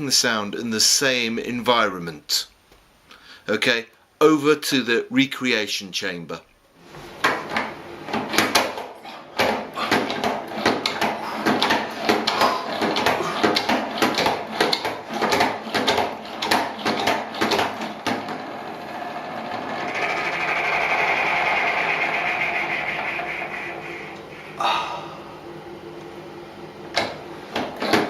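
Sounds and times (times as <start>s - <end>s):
salad spinner whirring: 7.6s - 28.0s
salad spinner clicking and rattling: 9.2s - 23.3s.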